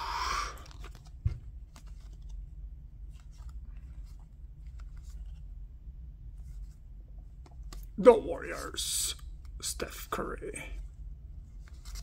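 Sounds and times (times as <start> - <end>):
low steady hum: 0.0 - 12.0
card crinkle: 0.6 - 2.4
cards being flipped through: 0.6 - 5.5, 7.4 - 8.0, 11.6 - 12.0.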